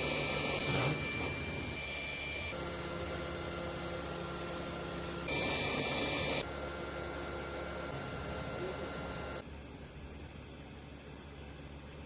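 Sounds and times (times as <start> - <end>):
electronic whine: 0.0 - 9.4.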